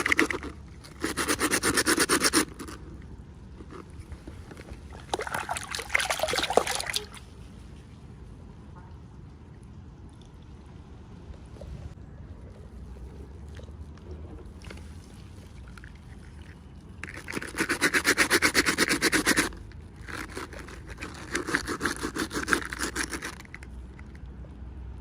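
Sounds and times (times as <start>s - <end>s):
rapid scraping: 0.0s - 2.9s.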